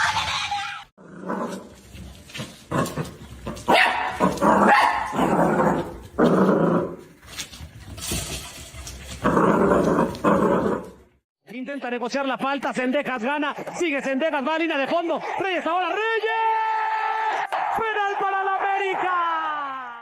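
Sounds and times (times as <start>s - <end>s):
dog barking: 3.7s - 5.3s.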